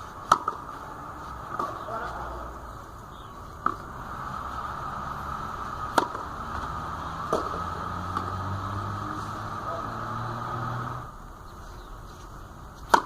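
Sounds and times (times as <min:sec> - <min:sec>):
steady background hiss: 0:00.0 - 0:13.0
tennis ball struck by rackets: 0:00.2 - 0:02.4, 0:03.6 - 0:04.5, 0:05.6 - 0:08.4, 0:12.8 - 0:13.0.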